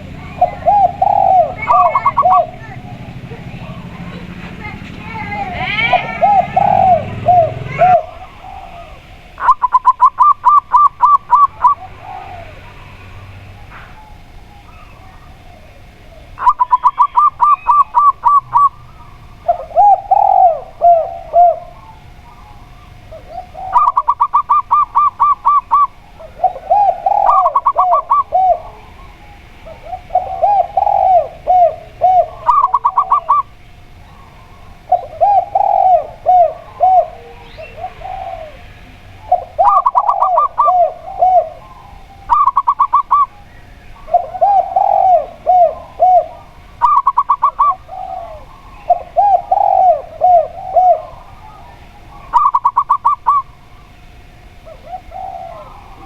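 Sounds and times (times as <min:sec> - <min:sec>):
quick high dove coos: 0:00.0 - 0:12.8
lower rounder dove coos: 0:00.0 - 0:56.0.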